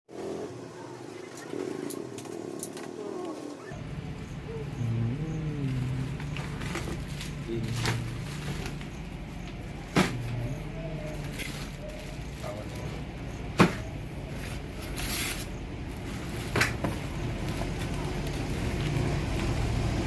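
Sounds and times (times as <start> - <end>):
packaging rustling: 5.7 - 19.5.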